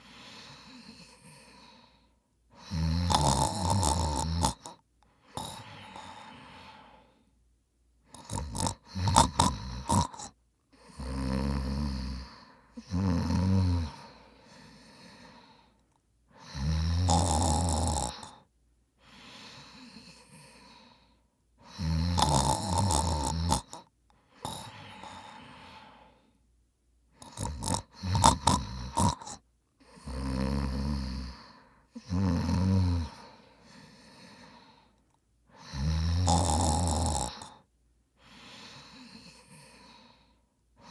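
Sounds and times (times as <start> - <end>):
breathing: 0.0 - 2.9, 4.5 - 7.4, 8.1 - 13.0, 13.6 - 16.7, 18.0 - 22.0, 23.5 - 26.5, 27.2 - 32.2, 32.8 - 36.0, 37.2 - 40.9
man snoring: 2.6 - 7.0, 8.1 - 15.4, 16.4 - 18.4, 21.6 - 26.0, 27.2 - 34.8, 35.6 - 37.7.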